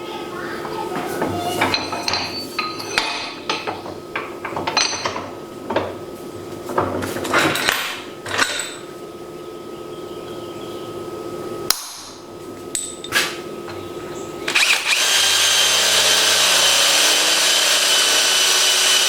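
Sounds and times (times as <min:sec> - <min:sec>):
metal parts clinking and knocking: 0:01.6 - 0:05.9
steady machine hum: 0:08.0 - 0:19.0.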